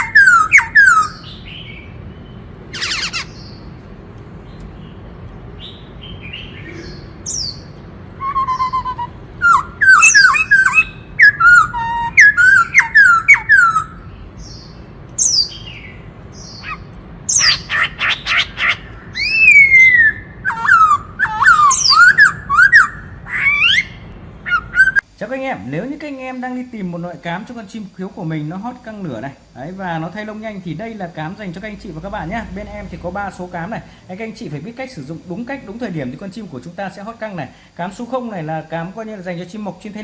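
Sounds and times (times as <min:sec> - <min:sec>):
bird singing whistled notes: 0:00.0 - 0:03.6, 0:05.6 - 0:17.7, 0:18.3 - 0:25.0.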